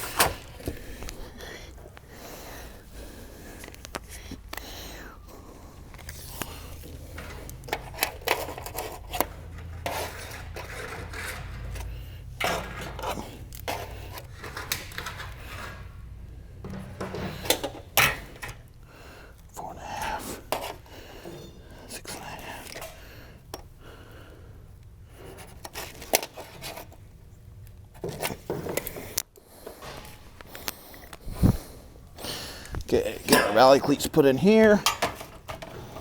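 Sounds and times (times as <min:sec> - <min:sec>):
sharp knocks on metal: 0:16.7 - 0:17.5
sheet metal clinks and taps: 0:16.7 - 0:18.6, 0:34.8 - 0:35.8.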